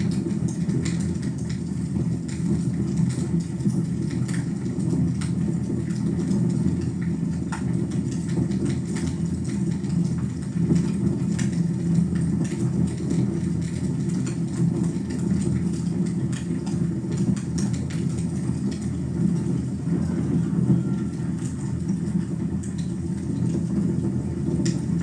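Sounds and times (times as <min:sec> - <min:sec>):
fire rumbling: 0:00.0 - 0:25.0
fire crackling and popping: 0:21.0 - 0:25.0.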